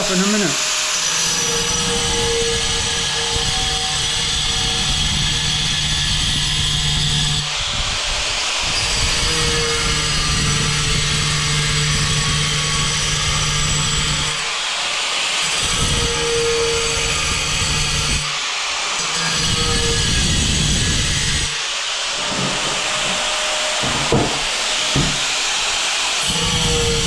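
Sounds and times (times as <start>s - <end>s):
angle grinder cutting tile: 0.0s - 27.0s.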